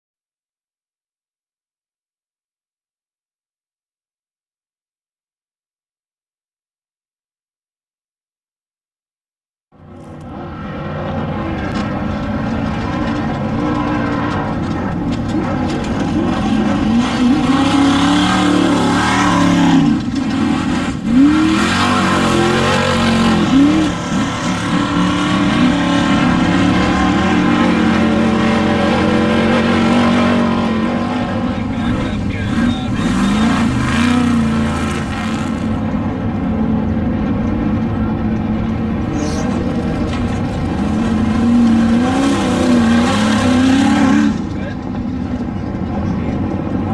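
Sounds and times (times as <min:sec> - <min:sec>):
race vehicle engines revving: 0:09.8 - 0:46.9.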